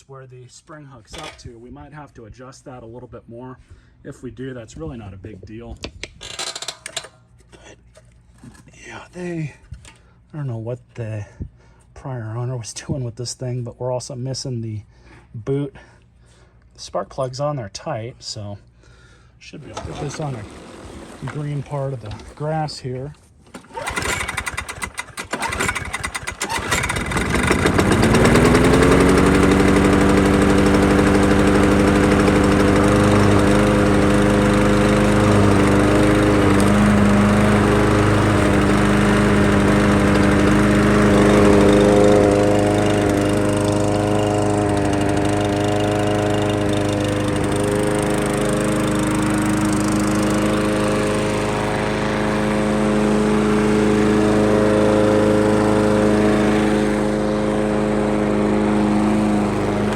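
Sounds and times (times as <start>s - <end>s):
lawn mower engine starting and running: 1.1s - 1.5s, 6.0s - 8.7s, 19.0s - 59.9s.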